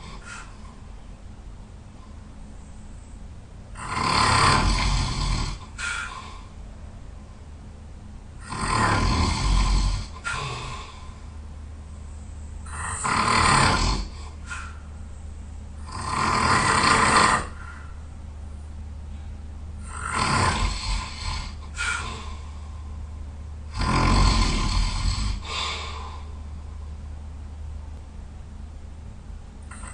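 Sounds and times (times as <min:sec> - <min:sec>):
soft breaths: 0:00.0 - 0:01.0, 0:14.0 - 0:15.8, 0:17.4 - 0:18.2, 0:21.0 - 0:23.5, 0:24.8 - 0:27.2
person snoring loudly: 0:03.8 - 0:06.2, 0:08.4 - 0:11.1, 0:12.7 - 0:14.7, 0:15.8 - 0:17.7, 0:19.8 - 0:22.5, 0:23.7 - 0:26.3.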